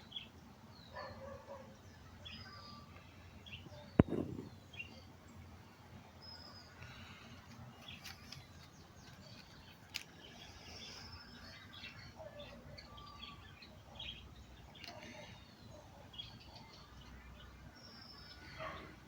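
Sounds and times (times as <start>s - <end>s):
low countryside hum: 0.0s - 19.0s
sharp click: 4.0s - 4.6s.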